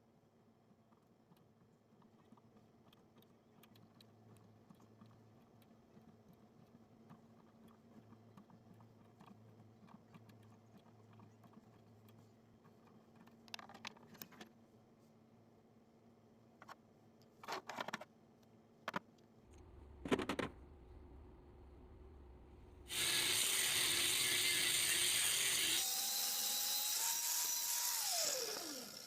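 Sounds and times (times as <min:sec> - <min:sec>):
steady low hum: 0:19.4 - 0:23.0.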